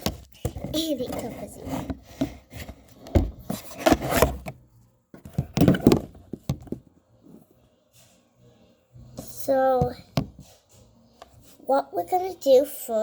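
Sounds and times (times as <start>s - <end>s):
camera handling thumps and rubbing: 0.0s - 4.6s.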